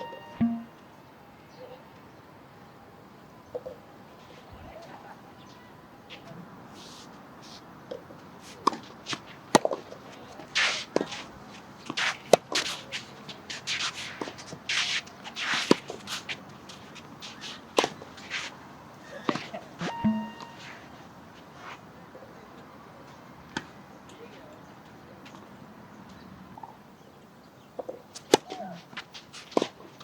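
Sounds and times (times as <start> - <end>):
tennis ball struck by rackets: 0.0 - 0.8, 8.6 - 9.9, 19.3 - 20.6
shoes scuffing on court: 8.4 - 18.6.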